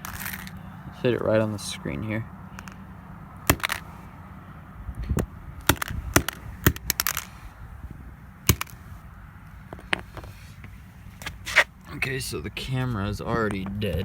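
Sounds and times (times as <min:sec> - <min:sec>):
phone screen struck cracking: 0:03.5 - 0:03.8.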